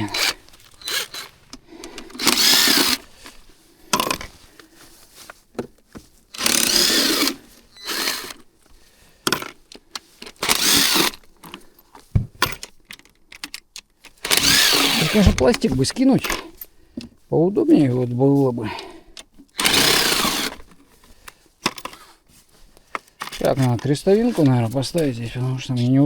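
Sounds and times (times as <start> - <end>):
cordless drill motor whine: 0.0 - 1.3, 1.9 - 3.0, 6.4 - 8.4, 10.4 - 11.1, 14.3 - 15.5, 19.6 - 20.6.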